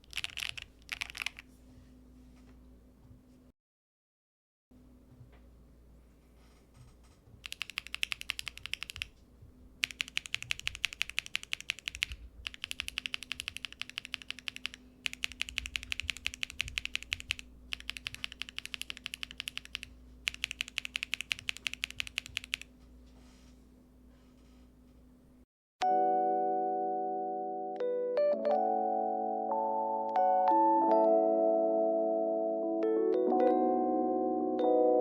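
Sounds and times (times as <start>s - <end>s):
fast mechanical keyboard typing: 0.0s - 1.4s, 7.4s - 9.2s, 9.8s - 22.7s.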